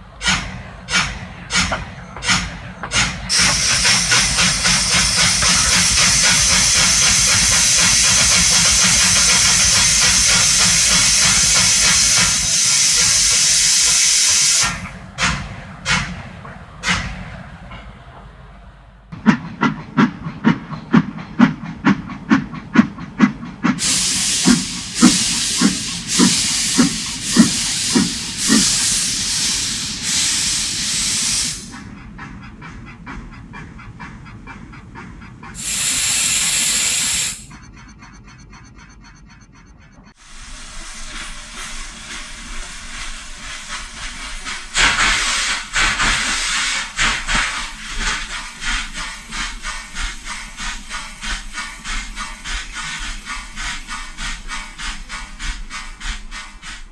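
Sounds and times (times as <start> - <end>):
steam hissing: 0.0 - 17.2, 23.2 - 32.0, 35.4 - 38.3, 40.1 - 56.9
steam locomotive chuffing: 0.0 - 56.9.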